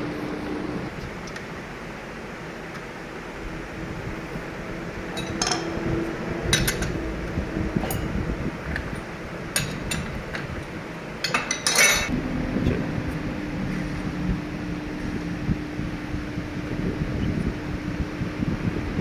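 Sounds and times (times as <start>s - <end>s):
steady machine hum: 0.0s - 19.0s
metal parts clinking and rattling: 5.1s - 5.8s, 6.5s - 7.0s, 11.2s - 12.1s.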